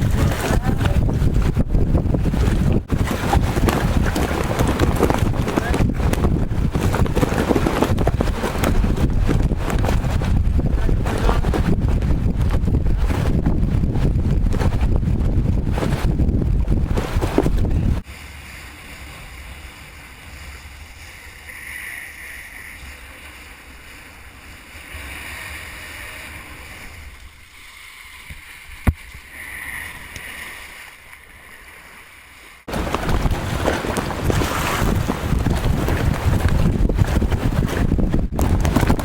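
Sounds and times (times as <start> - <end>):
wind buffeting microphone: 0.0 - 18.1, 32.7 - 39.0.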